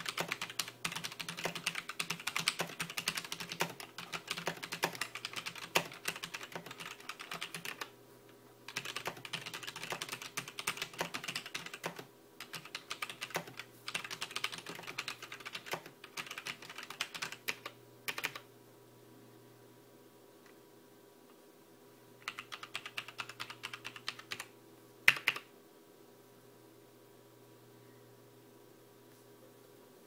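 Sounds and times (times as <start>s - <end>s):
mechanical keyboard typing: 0.0s - 7.9s, 8.7s - 18.5s, 22.2s - 24.5s, 25.1s - 25.5s.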